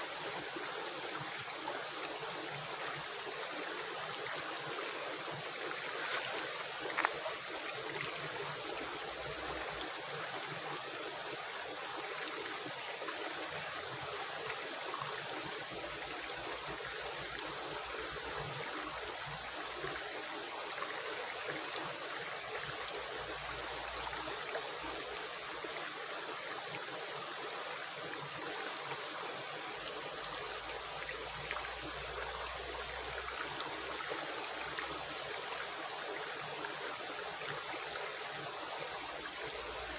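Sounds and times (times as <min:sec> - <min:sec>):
river water rushing: 0:00.0 - 0:14.5.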